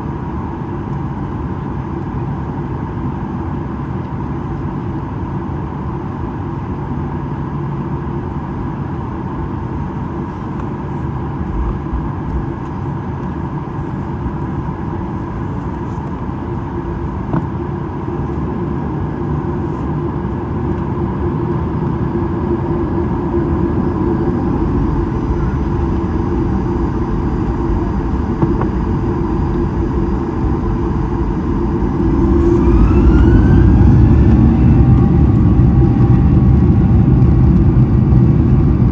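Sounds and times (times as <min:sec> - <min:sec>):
airplane cabin engine noise: 0:00.0 - 0:38.9
jet engines spooling up: 0:09.4 - 0:38.9.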